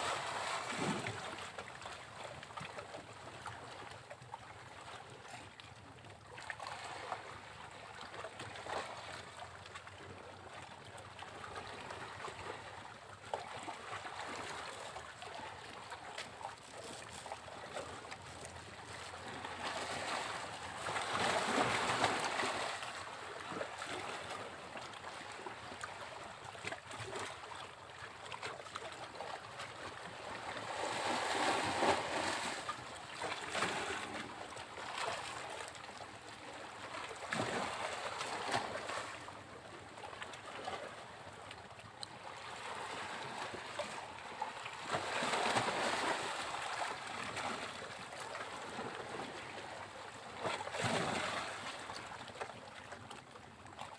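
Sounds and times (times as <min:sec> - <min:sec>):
waves breaking: 0:00.0 - 0:01.6, 0:17.0 - 0:26.0, 0:30.0 - 0:39.3, 0:42.3 - 0:52.3.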